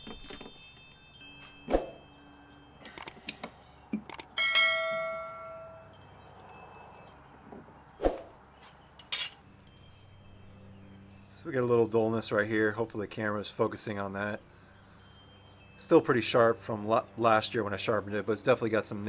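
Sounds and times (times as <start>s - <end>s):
bell-like metal ring: 0.0s - 3.0s, 4.3s - 7.5s, 8.8s - 11.7s, 14.6s - 17.2s
metal pieces knocking and clinking: 9.0s - 9.4s.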